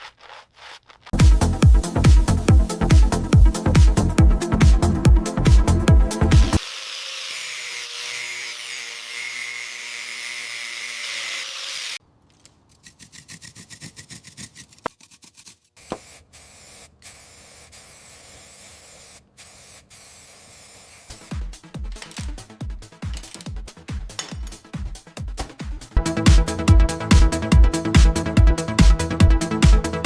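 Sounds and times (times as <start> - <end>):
hissing tool: 15.8 - 21.4.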